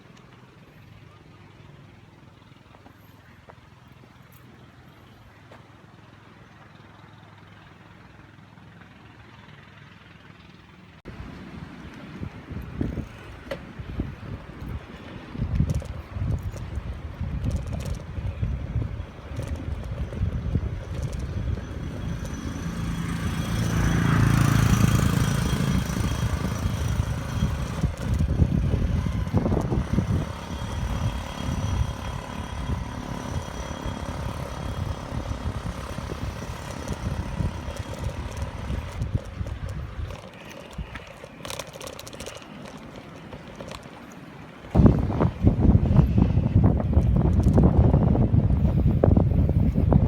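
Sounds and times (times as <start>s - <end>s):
motor engine: 0.0s - 50.0s
wind buffeting microphone: 11.1s - 44.0s, 44.6s - 50.0s.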